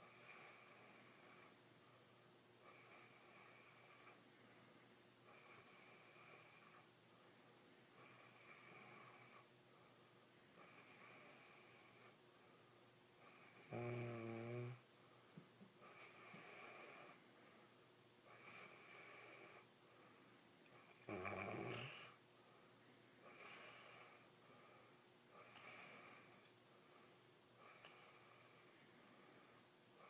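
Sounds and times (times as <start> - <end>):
low-pitched snores: 0.0 - 1.6, 2.6 - 4.2, 5.3 - 6.9, 8.0 - 9.5, 10.6 - 12.2, 13.2 - 14.9, 15.8 - 17.2, 18.2 - 19.7, 20.7 - 22.2, 23.2 - 24.4, 25.3 - 26.6, 27.6 - 28.7
hissing sleep breaths: 0.0 - 7.0, 15.8 - 30.0.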